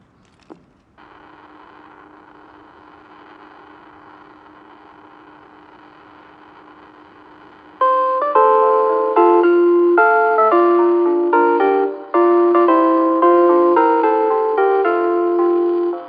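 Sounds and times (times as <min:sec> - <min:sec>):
loudspeaker hiss and hum: 0:01.0 - 0:16.0
electronic chime melody: 0:07.8 - 0:16.0.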